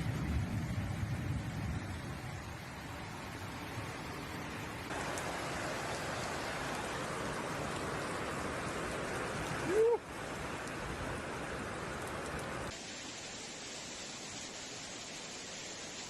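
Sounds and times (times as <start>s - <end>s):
heavy rain: 0.0s - 16.0s
running water: 2.5s - 16.0s.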